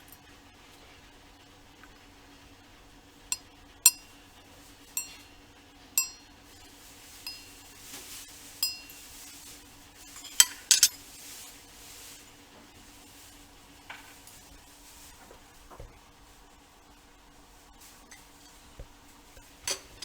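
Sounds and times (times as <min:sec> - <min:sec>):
ceramic cup clinking: 0:05.0 - 0:05.3, 0:06.0 - 0:07.7, 0:08.6 - 0:09.0.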